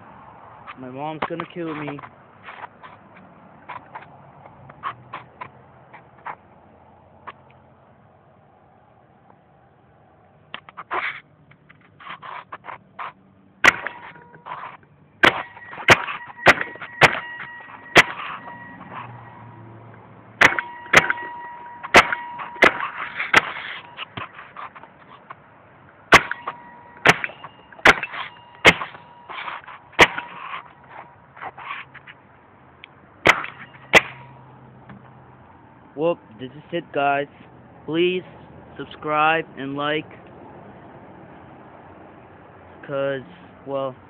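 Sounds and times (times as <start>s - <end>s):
steady high whine: 13.7s - 24.8s, 26.1s - 31.1s
paintball gun shots: 20.4s - 21.2s, 26.1s - 29.0s.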